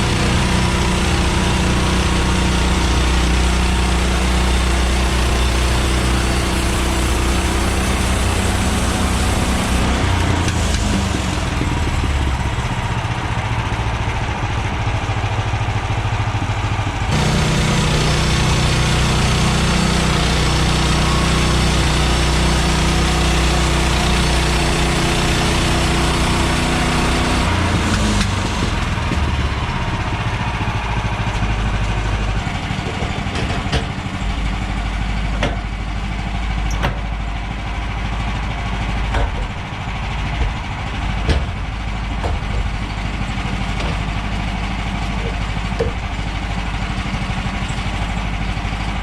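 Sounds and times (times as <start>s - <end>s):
sawmill gas engine running: 0.0s - 49.0s
sharp knocks: 40.3s - 44.2s.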